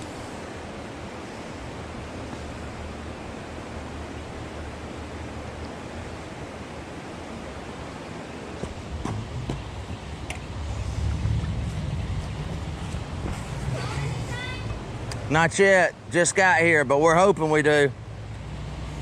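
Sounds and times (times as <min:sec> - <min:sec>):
river water rushing: 0:00.0 - 0:19.0
sharp knocks: 0:08.6 - 0:09.7.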